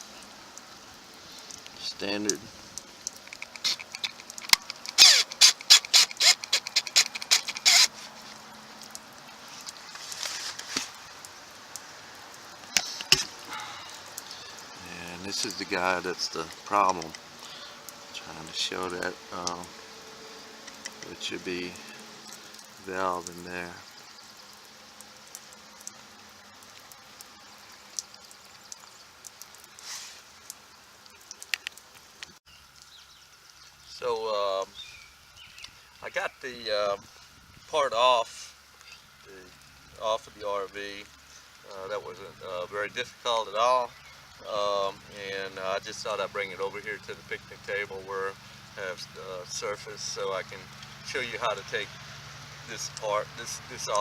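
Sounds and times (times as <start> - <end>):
faint outdoor hiss: 0.0 - 54.0
screwdriver clicking and squeaking: 3.3 - 7.9
short rustle: 9.3 - 11.1, 29.7 - 30.4
light clicks and taps: 16.4 - 17.2, 31.2 - 32.4.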